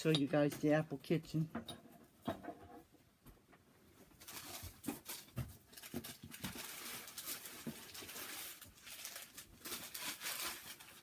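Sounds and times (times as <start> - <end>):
wrapping rustling: 4.0 - 11.0.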